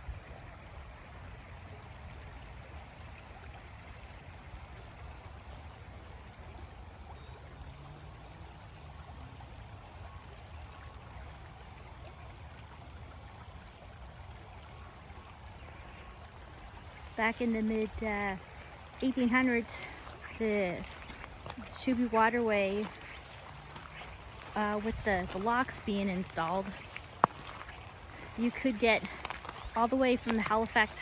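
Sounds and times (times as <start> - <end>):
river water rushing: 15.3 - 31.0.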